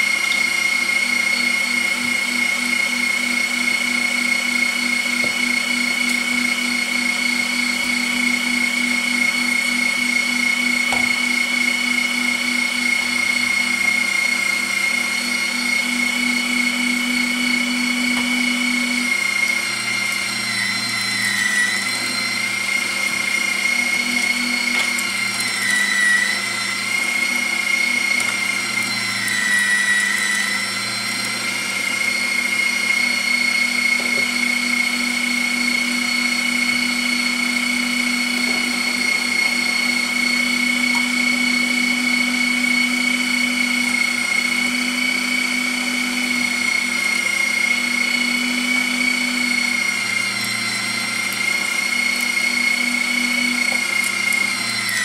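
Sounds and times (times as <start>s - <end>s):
meat mincer motor whining: 0.0s - 55.0s.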